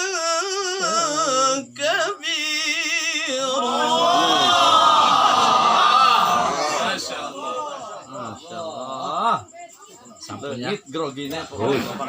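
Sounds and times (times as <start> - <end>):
man reciting melodically: 0.0 - 4.7
overlapping voices: 3.5 - 9.0.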